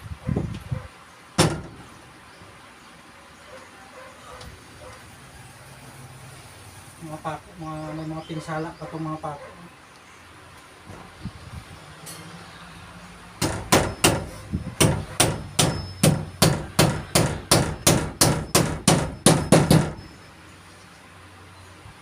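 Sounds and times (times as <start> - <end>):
hammer striking nails into wood: 1.4 - 1.8, 13.4 - 20.0.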